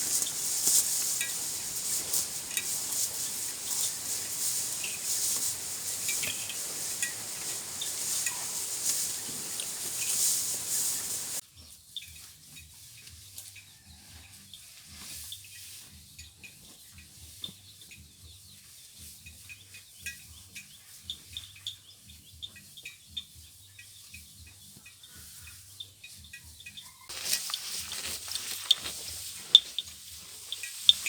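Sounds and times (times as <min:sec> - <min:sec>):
low uneven rumble: 0:00.0 - 0:11.4
faint bird chirps: 0:04.6 - 0:12.1, 0:17.3 - 0:31.0.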